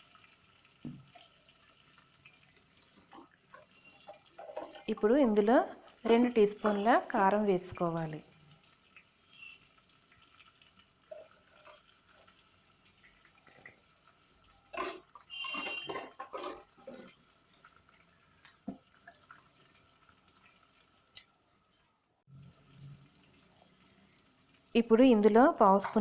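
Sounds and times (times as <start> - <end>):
light clinks of utensils: 14.7 - 17.7.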